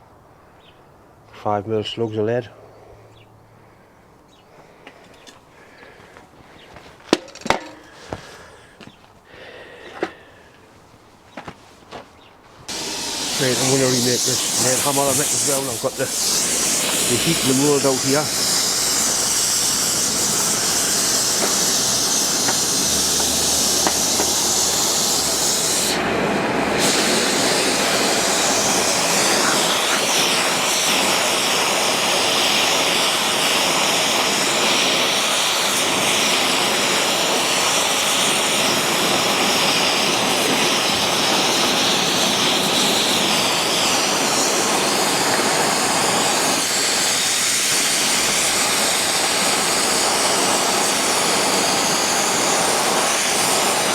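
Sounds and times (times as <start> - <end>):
gas torch hissing: 12.7 - 53.9.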